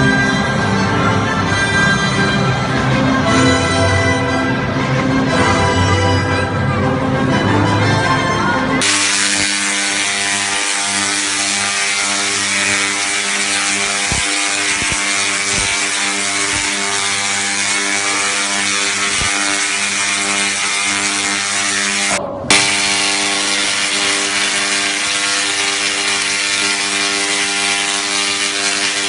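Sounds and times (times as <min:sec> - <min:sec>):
background music: 0:00.0 - 0:08.8
tesla coil electrical buzz: 0:08.8 - 0:29.0.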